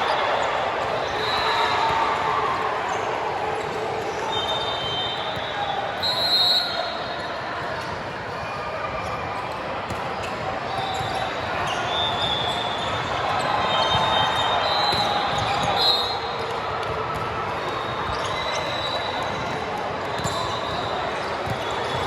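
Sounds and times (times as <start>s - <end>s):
volleyballs hit and bouncing: 14.9s - 22.0s.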